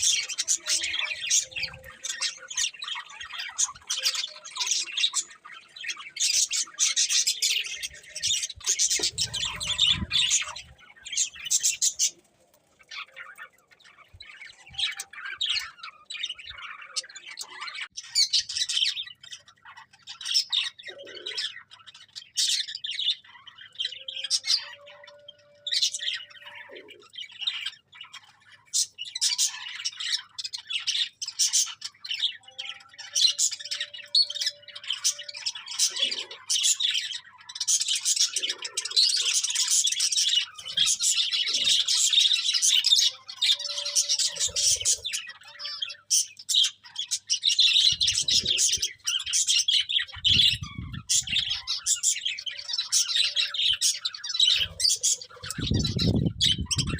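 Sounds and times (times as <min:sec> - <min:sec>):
budgerigars chirping: 0:12.9 - 0:56.9.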